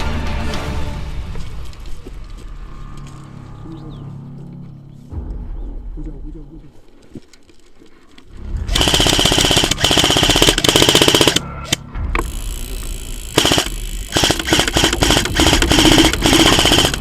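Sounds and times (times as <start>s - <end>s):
steady whine: 8.6s - 17.0s
airsoft gun rapid fire: 8.7s - 17.0s.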